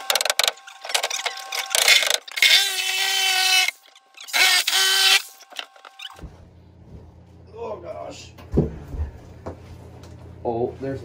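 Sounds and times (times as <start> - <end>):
power cutting tool cutting fiberglass: 0.0 - 6.2.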